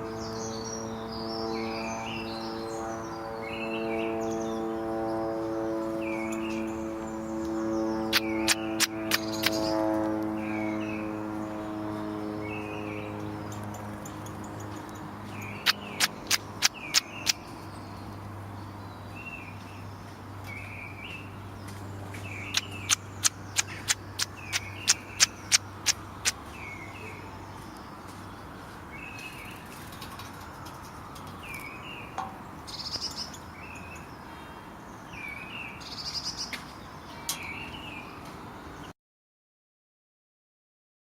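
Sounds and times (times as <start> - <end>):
sharp bird ticks: 7.4 - 10.2, 13.5 - 17.7, 21.6 - 26.7
robin call: 8.1 - 9.7.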